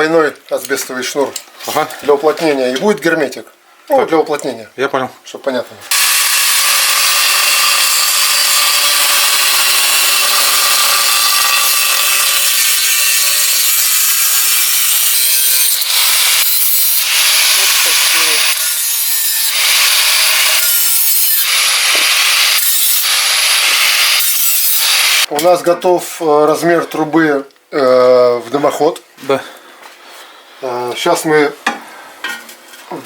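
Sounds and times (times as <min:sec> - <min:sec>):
angle grinder cutting metal: 0:05.9 - 0:25.4.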